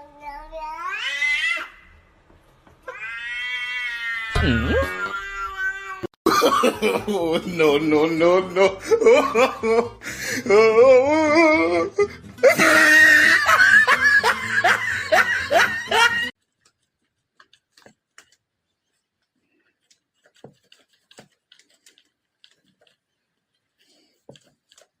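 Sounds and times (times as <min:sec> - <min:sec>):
laughter in rapid pulses: 0:12.4 - 0:16.3.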